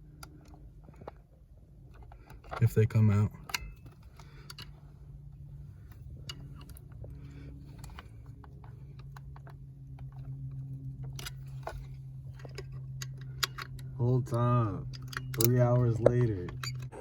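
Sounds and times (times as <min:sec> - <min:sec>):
faint low hum: 0:00.0 - 0:17.0
hands clicking and tapping on parts: 0:07.8 - 0:17.0.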